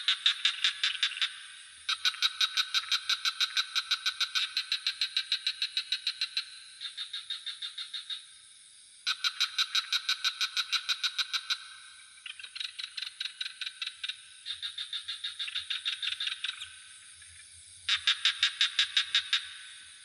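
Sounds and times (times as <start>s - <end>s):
frogs calling in pulsed trills: 0.0s - 20.0s
high insect drone: 0.0s - 20.0s.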